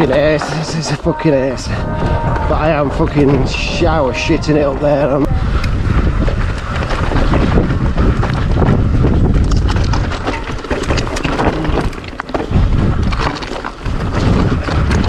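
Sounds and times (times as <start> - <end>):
mountain bike rattling over rocks: 0.0 - 1.0, 5.7 - 15.0
wind buffeting microphone: 0.0 - 15.0.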